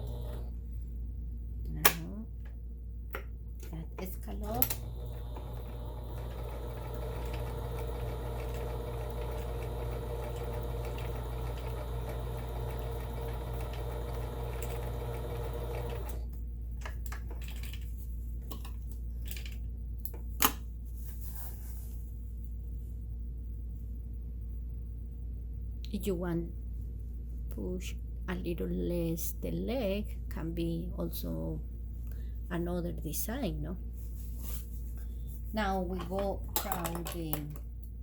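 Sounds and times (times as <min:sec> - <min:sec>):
sewing machine motor whine: 0:00.0 - 0:00.5, 0:04.5 - 0:16.3
low steady hum: 0:00.0 - 0:38.0
clicks and handling sounds: 0:35.9 - 0:37.7.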